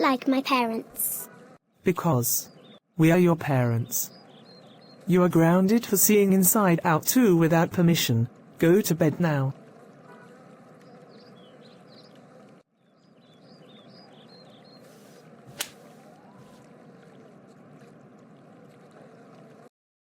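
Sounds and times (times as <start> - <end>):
sharp click: 15.6 - 15.8.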